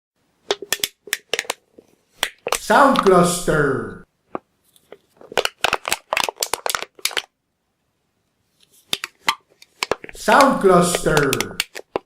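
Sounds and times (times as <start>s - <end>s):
metal cans crinkling: 0.5s - 2.7s, 4.3s - 7.3s, 8.8s - 12.0s.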